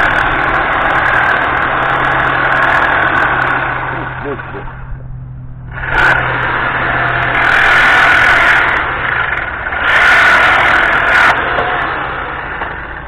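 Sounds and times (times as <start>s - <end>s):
low hum: 0.0s - 13.0s
motor running: 0.0s - 13.0s.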